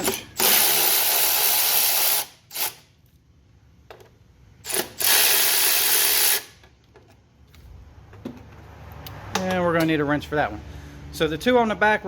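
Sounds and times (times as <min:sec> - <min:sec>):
cordless ratchet spinning bolts: 0:00.0 - 0:02.8, 0:04.6 - 0:06.6.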